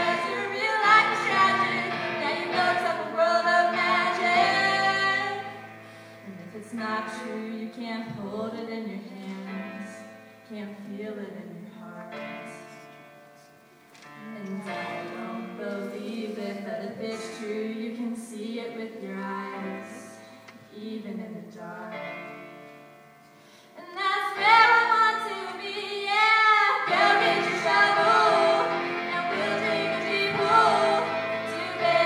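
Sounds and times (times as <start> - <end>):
women singing a pop song: 0.0 - 5.6, 14.4 - 20.2, 23.8 - 32.0.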